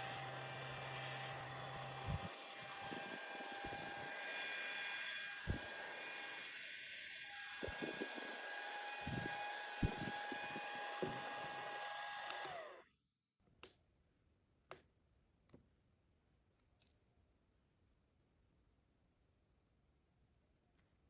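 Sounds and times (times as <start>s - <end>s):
handheld fan whining: 0.0s - 12.8s.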